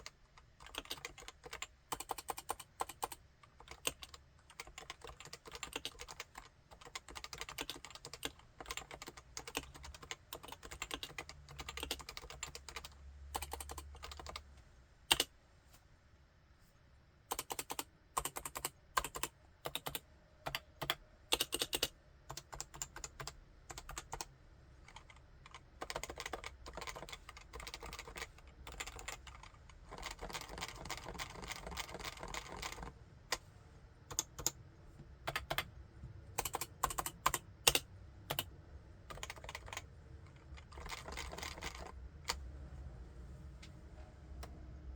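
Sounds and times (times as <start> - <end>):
typing on keyboard: 0.0 - 14.4, 17.3 - 24.3, 24.9 - 32.9, 34.1 - 34.6, 35.3 - 35.7, 36.4 - 38.5, 39.1 - 42.4.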